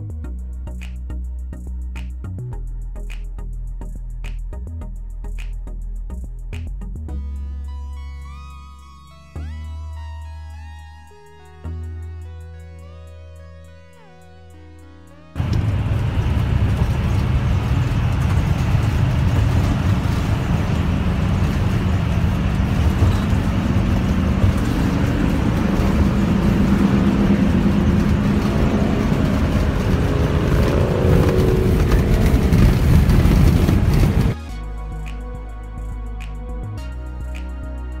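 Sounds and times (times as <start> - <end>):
vehicle engine and road rumble: 15.3 - 38.0.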